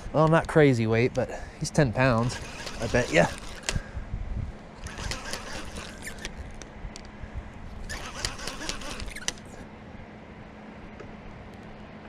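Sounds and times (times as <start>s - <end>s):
low steady hum: 0.0s - 12.0s
fishing tackle rattling and clicking: 2.1s - 3.8s, 4.8s - 7.1s, 7.9s - 9.5s.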